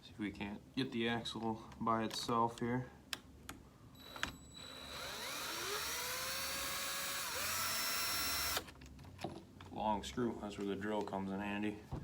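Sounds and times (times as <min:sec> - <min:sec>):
power drill running: 0:04.0 - 0:08.7.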